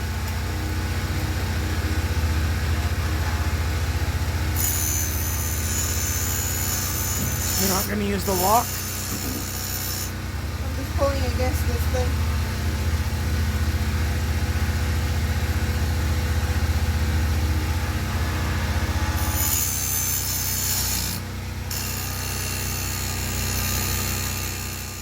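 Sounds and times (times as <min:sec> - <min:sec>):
chainsaw cutting through log: 0:04.5 - 0:10.2, 0:18.3 - 0:25.0.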